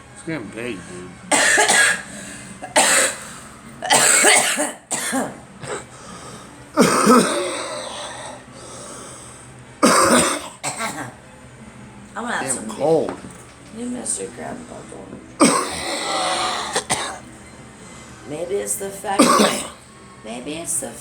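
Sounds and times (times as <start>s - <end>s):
person coughing: 1.3s - 5.9s, 6.8s - 8.4s, 9.8s - 11.2s, 15.4s - 17.2s, 19.2s - 19.8s.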